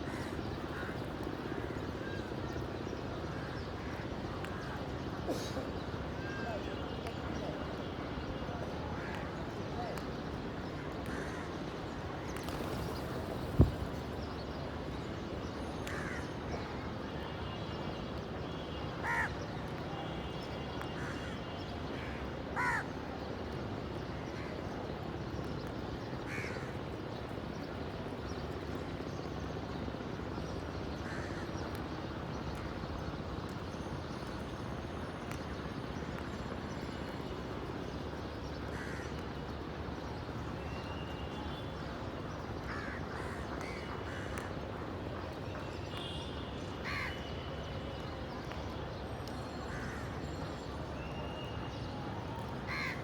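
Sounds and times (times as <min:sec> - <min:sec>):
crows cawing: 0:19.0 - 0:19.3, 0:22.6 - 0:22.9, 0:46.8 - 0:47.2, 0:52.7 - 0:53.0.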